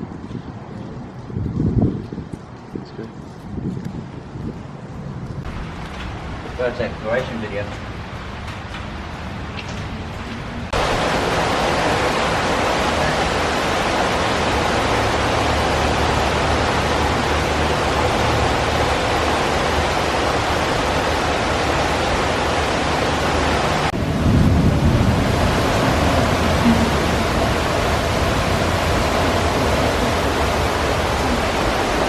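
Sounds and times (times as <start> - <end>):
heavy rain rushing: 5.4 - 32.0
low rumble: 23.2 - 32.0.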